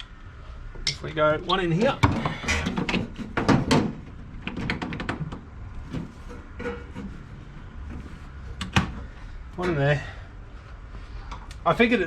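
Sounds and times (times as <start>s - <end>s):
heavy cables knocking and clicking: 1.8s - 5.6s.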